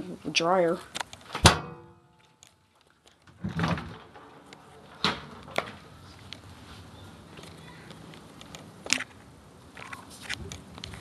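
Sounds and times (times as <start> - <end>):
appliance door clunk: 1.4 - 2.0, 3.4 - 5.8.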